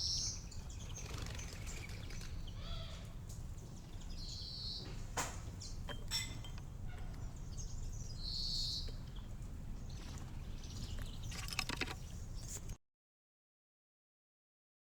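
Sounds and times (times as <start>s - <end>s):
small bird high call: 0.0s - 3.2s.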